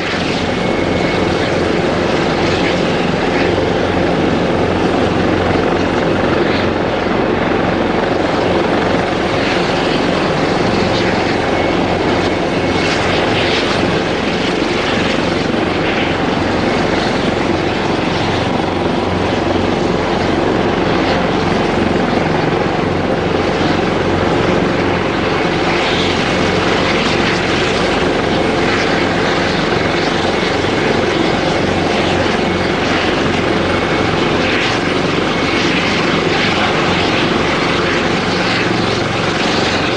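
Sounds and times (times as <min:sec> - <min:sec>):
helicopter rotor beat: 0:00.0 - 0:39.9
helicopter turbine noise: 0:00.0 - 0:39.9.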